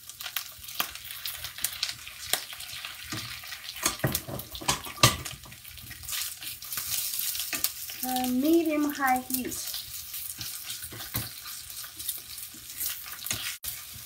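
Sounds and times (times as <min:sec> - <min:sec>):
chicken sizzling in hot oil: 0:00.0 - 0:14.0
utensil scraping a pan: 0:09.4 - 0:14.0.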